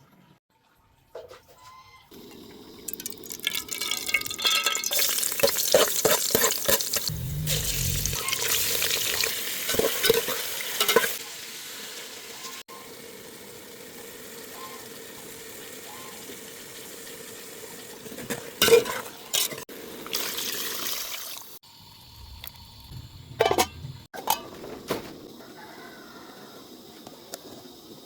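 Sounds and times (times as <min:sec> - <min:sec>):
food sizzling in a pot: 0:02.1 - 0:23.6
metal utensil clanking on pot: 0:03.8 - 0:07.1, 0:09.7 - 0:11.2, 0:18.6 - 0:19.6, 0:23.4 - 0:24.6.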